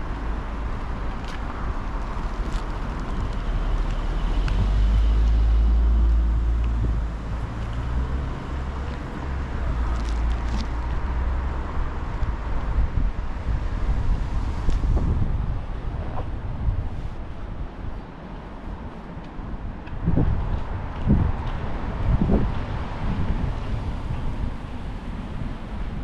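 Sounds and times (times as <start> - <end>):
city street noise: 0.0 - 26.0
wind rumbling on microphone: 0.0 - 26.0.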